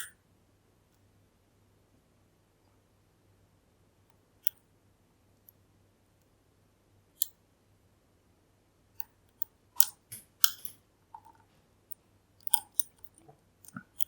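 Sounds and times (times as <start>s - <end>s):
lock pick clicking and scraping: 9.0s - 10.8s, 12.4s - 14.0s.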